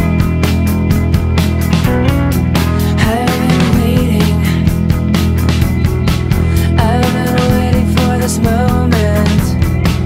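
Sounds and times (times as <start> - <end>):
song with guitar: 0.0 - 10.0
steady drum beat: 0.0 - 10.0.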